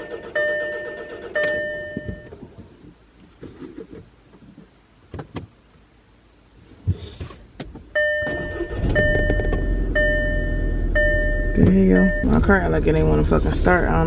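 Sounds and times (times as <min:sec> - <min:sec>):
car warning chime dinging: 0:00.0 - 0:02.4, 0:08.0 - 0:12.8
car engine cranking and running: 0:00.0 - 0:02.6, 0:07.9 - 0:14.0
clicks and knocks in car: 0:03.4 - 0:05.6.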